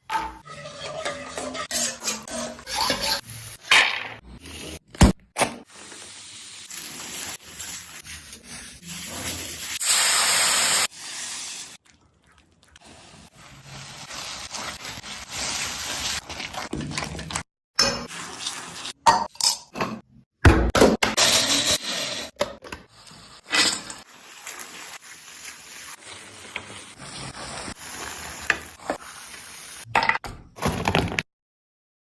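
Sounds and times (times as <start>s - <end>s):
utensils scraping a pan: 0.4s - 3.5s.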